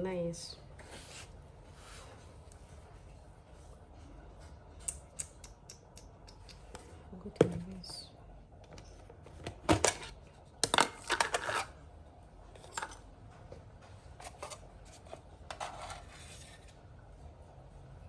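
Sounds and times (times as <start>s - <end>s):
utensils and containers clinking: 9.7s - 11.8s.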